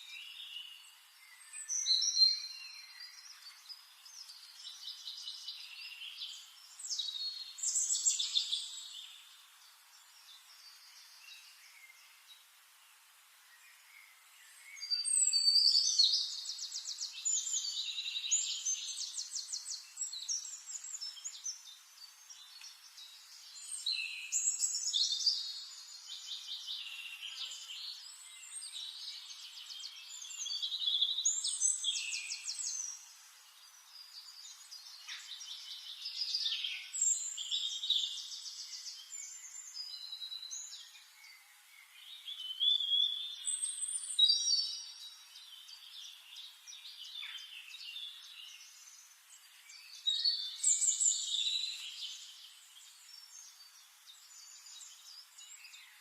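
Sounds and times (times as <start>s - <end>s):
songbirds trilling and chirping: 0.0s - 56.0s.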